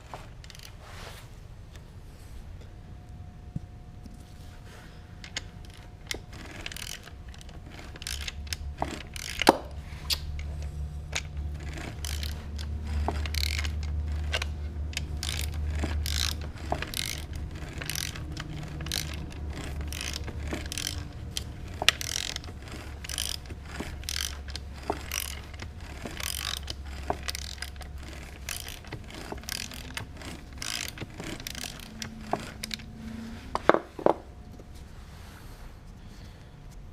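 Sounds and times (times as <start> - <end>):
rapid irregular knocking and clicking: 5.6 - 9.8, 10.4 - 32.9.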